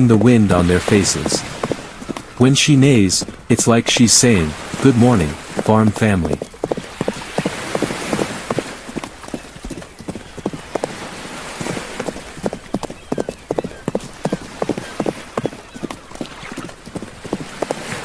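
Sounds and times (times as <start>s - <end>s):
horse hooves clip-clopping: 0.0s - 18.0s.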